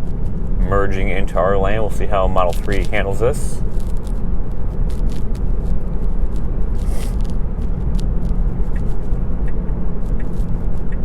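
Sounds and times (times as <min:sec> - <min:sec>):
road and tyre noise in car: 0:00.0 - 0:11.0
faint ticks: 0:04.8 - 0:11.0.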